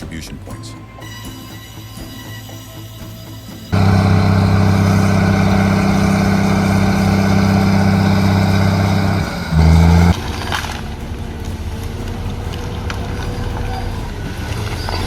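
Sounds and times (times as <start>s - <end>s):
heavy truck engine running: 3.7s - 15.0s.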